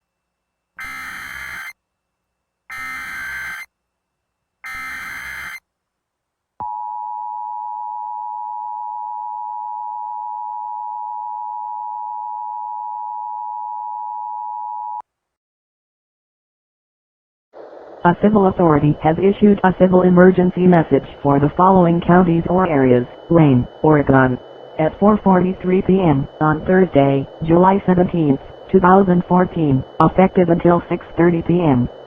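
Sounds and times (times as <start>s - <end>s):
digital data tone bursts: 0.8s - 1.8s, 2.7s - 3.7s, 4.6s - 5.6s
two-tone attention signal: 0.8s - 1.8s, 2.7s - 3.7s, 4.6s - 5.6s.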